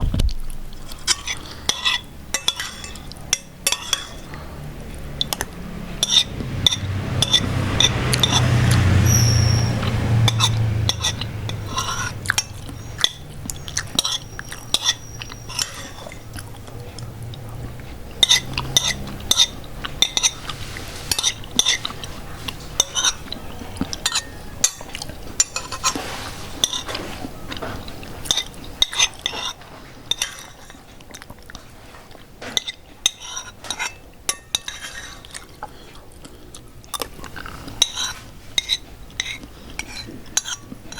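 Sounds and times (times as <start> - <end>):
metal spoon clinking on ceramic plate: 1.1 - 4.3, 9.5 - 16.0, 18.2 - 20.5, 22.8 - 26.0.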